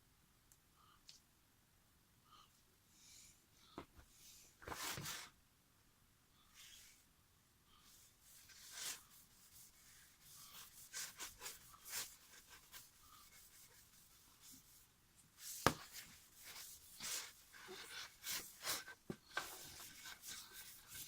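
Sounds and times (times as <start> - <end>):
hands rubbing on wooden drum hoop: 8.3 - 14.8.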